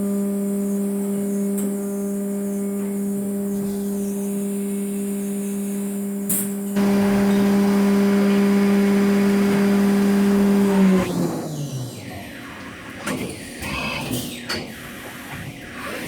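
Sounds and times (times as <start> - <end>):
milling machine high-pitched whine: 6.8 - 13.6.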